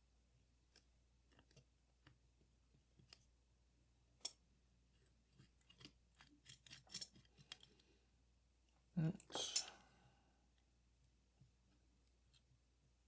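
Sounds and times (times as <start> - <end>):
small metal parts clicking: 5.8 - 7.7.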